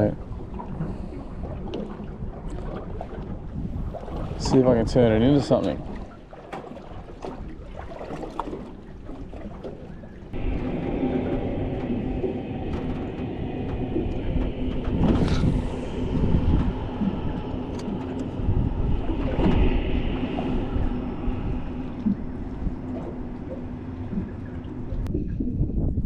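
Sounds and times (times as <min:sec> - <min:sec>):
water noise: 0:00.0 - 0:26.0
wind: 0:00.0 - 0:26.0
boat motor humming: 0:10.2 - 0:25.1.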